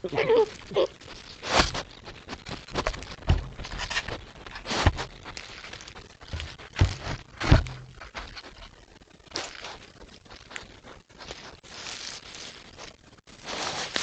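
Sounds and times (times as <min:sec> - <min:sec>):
animal footsteps in leaf litter: 0:00.0 - 0:14.0
thuds and knocks: 0:02.8 - 0:05.2, 0:06.2 - 0:08.3.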